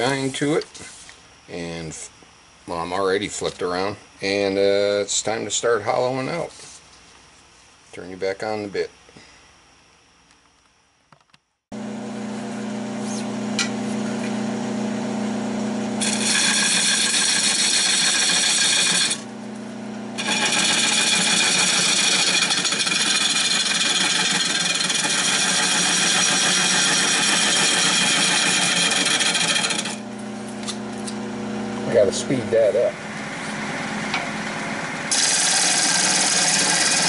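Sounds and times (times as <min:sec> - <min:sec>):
wood lathe humming: 0:14.6 - 0:19.6, 0:20.2 - 0:30.4, 0:33.0 - 0:37.0
turning tool scraping wood: 0:16.0 - 0:19.3, 0:20.2 - 0:30.2, 0:35.1 - 0:37.0.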